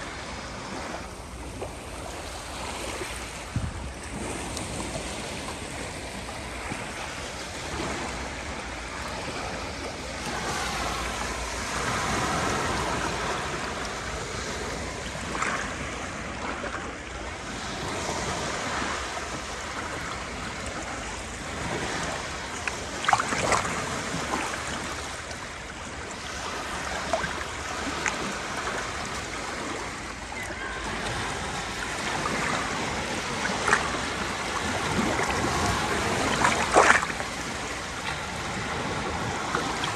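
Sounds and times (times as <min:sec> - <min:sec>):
sea waves washing on shore: 0:00.0 - 0:39.9
short sharp splashes: 0:35.2 - 0:37.4.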